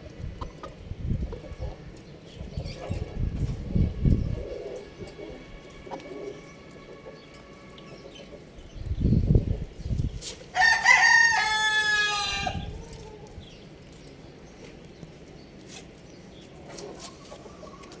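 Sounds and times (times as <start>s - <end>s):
rooster crowing: 10.6s - 13.2s.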